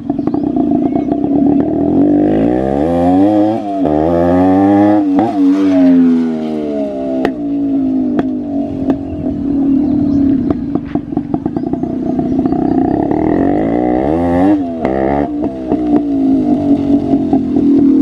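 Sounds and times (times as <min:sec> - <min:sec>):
motorcycle engine revving: 0:00.0 - 0:18.0
sharp exhaust pops: 0:07.0 - 0:09.4, 0:10.1 - 0:18.0.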